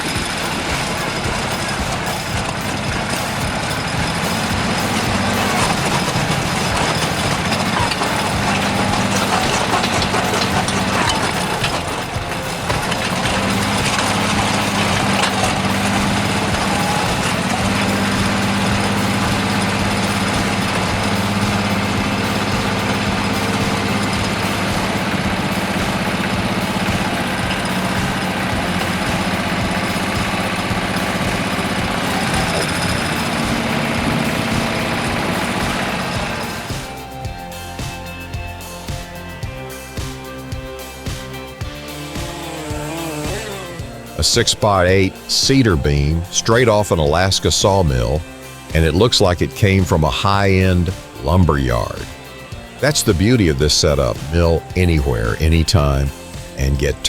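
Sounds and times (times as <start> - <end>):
engine running steadily: 0.0 - 39.2.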